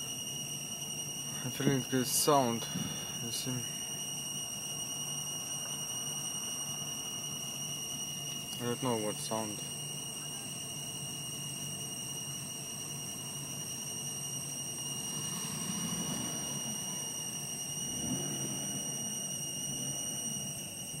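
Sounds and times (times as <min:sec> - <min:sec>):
high-pitched electronic whine: 0:00.0 - 0:21.0
hiss and low hum: 0:00.0 - 0:21.0.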